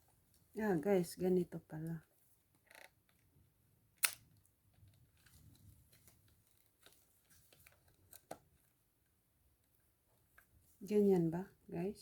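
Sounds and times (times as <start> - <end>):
parts clicking together: 4.0 - 4.3.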